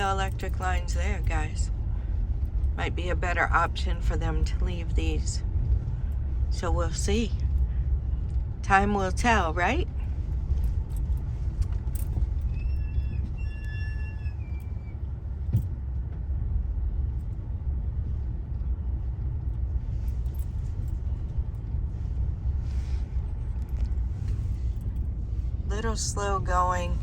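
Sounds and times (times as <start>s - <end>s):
car engine and tyres rumbling: 0.0s - 27.0s.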